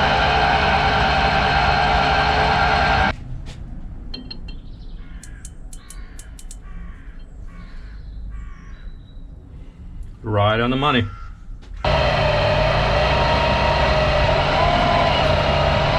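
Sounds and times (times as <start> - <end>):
metal lathe running: 0.0 - 3.1, 11.9 - 15.9
crow cawing: 5.0 - 8.9, 11.1 - 11.4.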